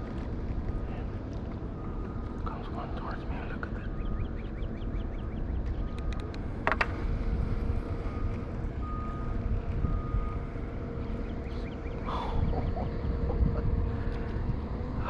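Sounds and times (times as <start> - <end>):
distant heavy machinery rumble: 0.0 - 15.0
faint vehicle reversing beeps: 0.0 - 15.0
sharp clicks: 5.7 - 6.9.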